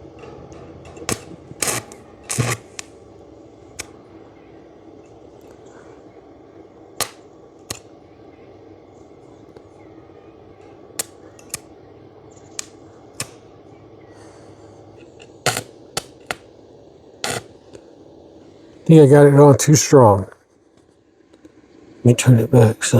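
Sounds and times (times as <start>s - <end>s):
welding arc cracking: 0.0s - 8.0s, 9.0s - 19.0s
welding machine hum: 0.0s - 18.9s.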